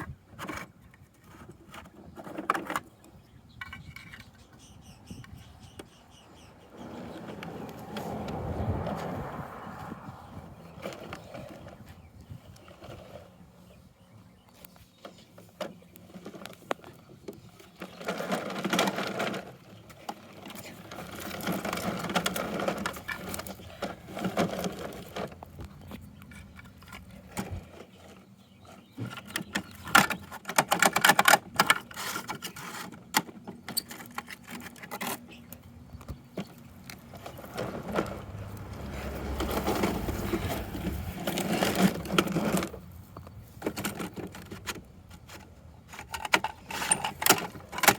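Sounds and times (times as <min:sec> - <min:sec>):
plastic toy parts rattling: 0:43.6 - 0:47.9.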